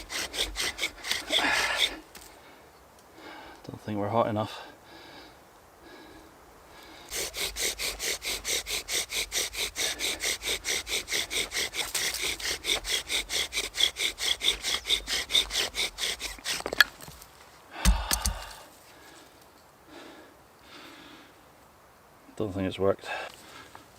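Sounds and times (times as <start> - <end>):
wood grinding on wood: 0.0 - 2.3, 7.1 - 17.3
short low thump: 17.8 - 18.4.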